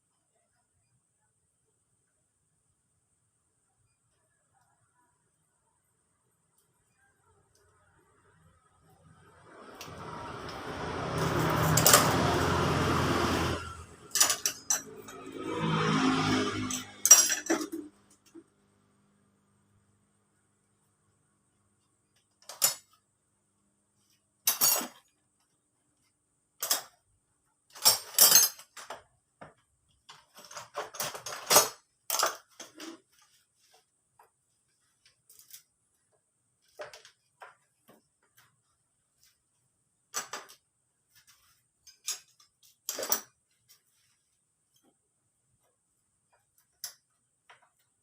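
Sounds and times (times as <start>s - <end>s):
metal tools clinking and clattering: 11.2s - 12.4s, 13.6s - 15.4s, 16.6s - 17.9s, 24.5s - 25.1s, 27.7s - 29.0s, 30.2s - 33.0s, 41.8s - 43.4s.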